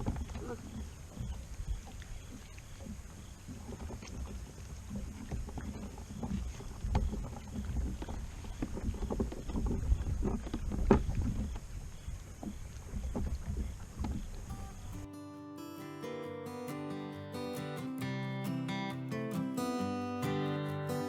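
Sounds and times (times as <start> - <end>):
water lapping against hull: 0.0 - 14.6.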